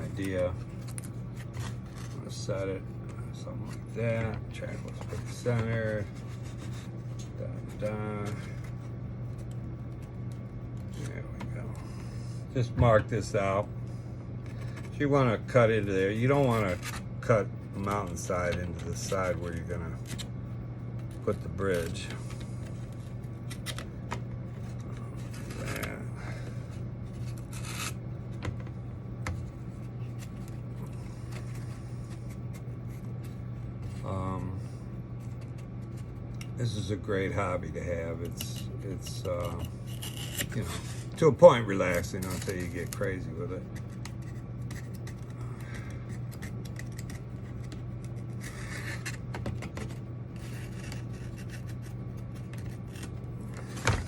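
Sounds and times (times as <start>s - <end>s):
steady low hum: 0.0s - 54.0s
scratchy strokes: 4.6s - 8.9s, 27.1s - 28.0s, 38.3s - 43.1s, 46.0s - 53.8s
marker scratching on foam: 4.9s - 8.0s
foam scraping and rubbing: 46.1s - 53.9s.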